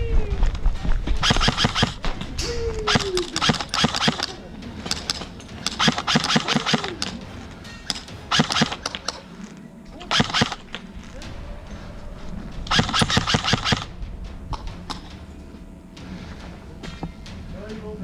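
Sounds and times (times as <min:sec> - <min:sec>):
airsoft rifle bursts: 0:01.2 - 0:02.0, 0:02.9 - 0:07.2, 0:07.9 - 0:09.2, 0:10.0 - 0:10.8, 0:12.7 - 0:13.9.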